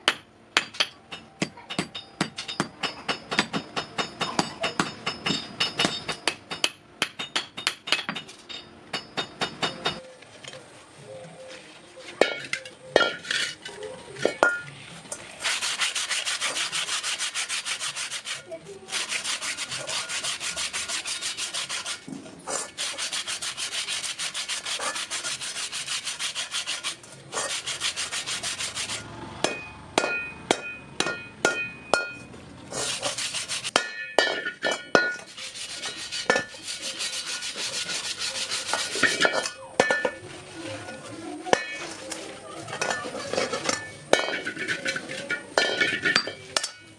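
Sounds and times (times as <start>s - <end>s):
abrasive scraping on metal: 11.9s - 46.9s.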